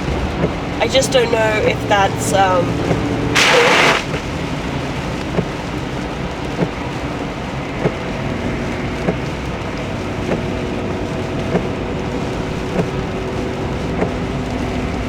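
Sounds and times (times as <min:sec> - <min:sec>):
heavy rain on a car: 0:00.0 - 0:15.0
road noise: 0:00.0 - 0:15.0
loud rush of noise: 0:03.3 - 0:04.7.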